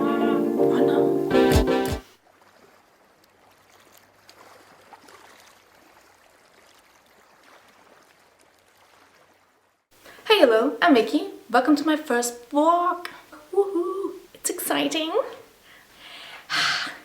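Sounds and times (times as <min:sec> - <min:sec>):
faint background hiss: 0:09.9 - 0:17.0.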